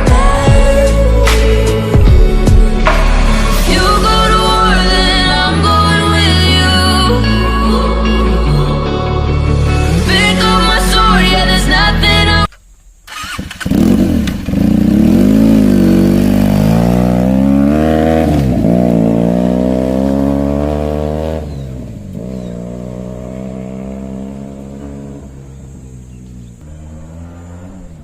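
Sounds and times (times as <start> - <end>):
motorcycle engine revving: 13.0 - 28.0.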